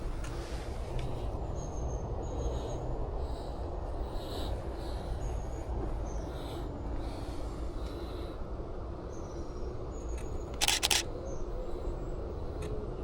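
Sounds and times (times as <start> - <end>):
camera shutter double click: 10.6 - 11.0.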